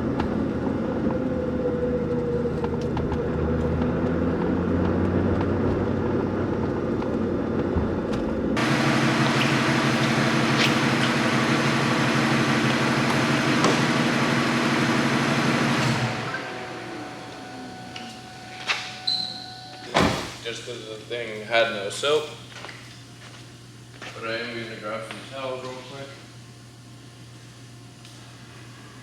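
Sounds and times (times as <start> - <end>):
car engine running: 0.0 - 18.6.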